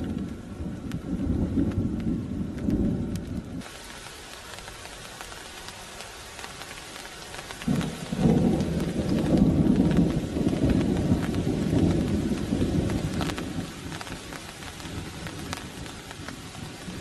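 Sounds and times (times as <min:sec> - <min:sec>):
rolling thunder: 0:00.0 - 0:03.7, 0:07.6 - 0:17.0
steady rain: 0:00.0 - 0:17.0.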